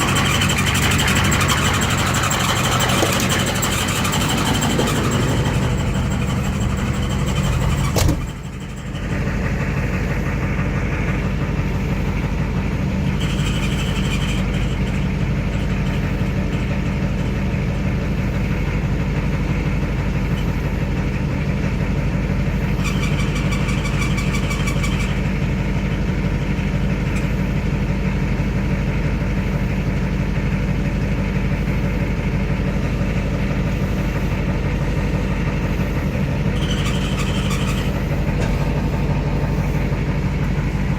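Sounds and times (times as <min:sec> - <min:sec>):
high bearing squeal: 0:00.0 - 0:09.2, 0:13.0 - 0:16.0, 0:22.6 - 0:25.5, 0:35.4 - 0:40.9
diesel truck running: 0:00.0 - 0:40.9.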